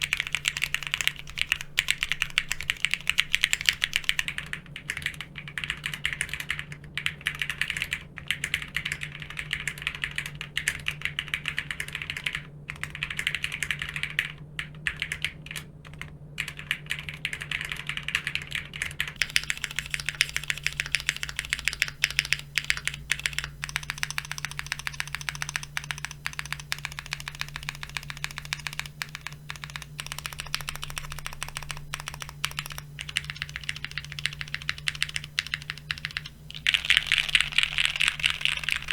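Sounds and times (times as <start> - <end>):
low steady hum: 0.0 - 6.5, 19.2 - 38.9
typing on mechanical keyboard: 0.0 - 38.9.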